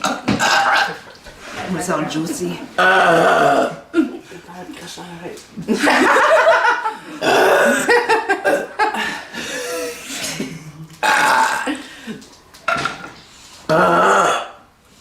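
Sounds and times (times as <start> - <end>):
woman belching loudly: 0.0 - 1.0, 2.8 - 4.0, 7.2 - 8.0, 11.0 - 11.8, 13.7 - 14.6.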